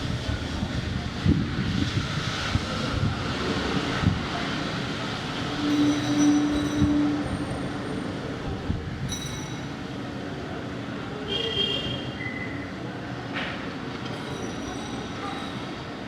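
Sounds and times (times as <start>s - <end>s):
traffic noise: 0.0s - 16.0s
high-pitched ringing squeals: 5.4s - 8.4s
low car horn: 5.5s - 8.1s.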